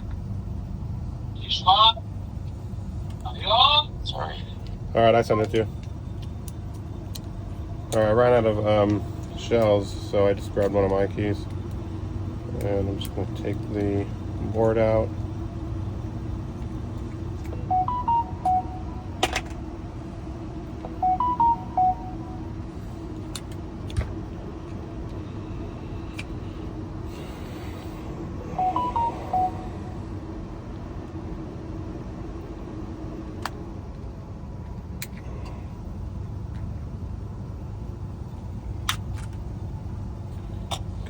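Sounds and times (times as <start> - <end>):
steady low hum: 0.0 - 41.0
electronic beep tunes: 17.6 - 19.2, 20.9 - 22.5, 28.6 - 30.0.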